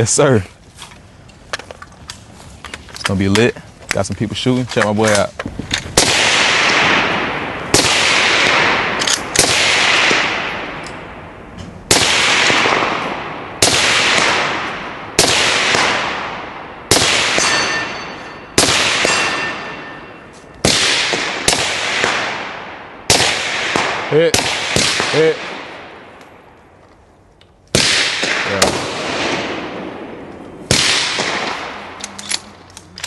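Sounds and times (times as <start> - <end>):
rifle shots with echo: 5.9 - 26.6, 27.7 - 32.6.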